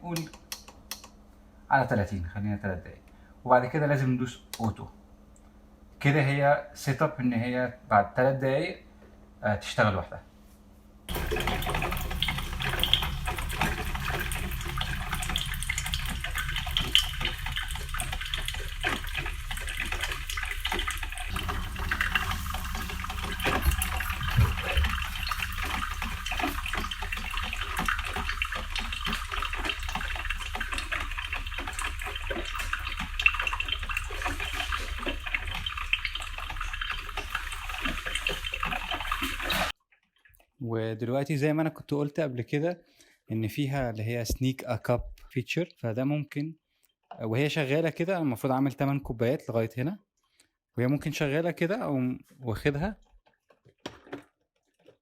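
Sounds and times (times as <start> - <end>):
low hum: 11.1 - 37.3
coffee maker hissing and gurgling: 11.1 - 39.7.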